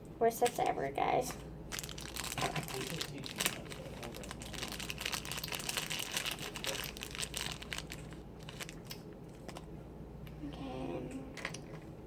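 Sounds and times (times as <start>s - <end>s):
plastic packaging crinkling: 1.7s - 9.6s.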